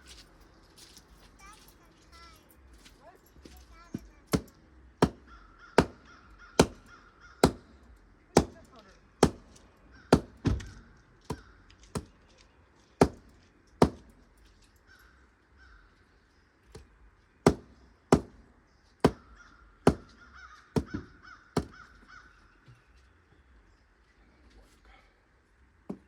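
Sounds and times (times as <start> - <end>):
hammer striking a nail into wood: 4.3 - 7.7, 8.4 - 9.5, 10.1 - 12.1, 13.0 - 14.1, 17.4 - 18.4, 19.0 - 20.2, 20.8 - 21.9.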